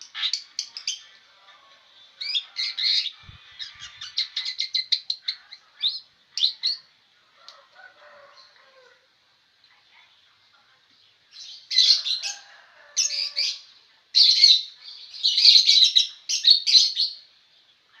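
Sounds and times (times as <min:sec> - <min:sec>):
shrike chattering calls: 0:02.2 - 0:06.9.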